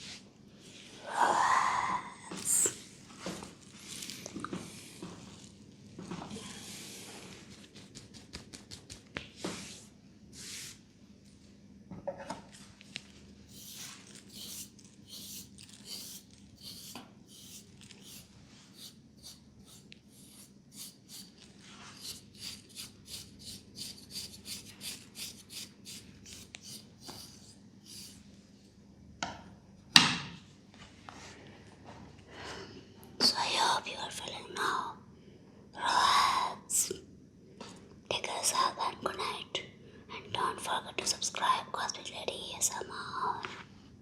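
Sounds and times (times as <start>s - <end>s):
hands rubbing hair and scalp: 7.2s - 10.7s, 13.5s - 23.2s, 24.1s - 28.2s.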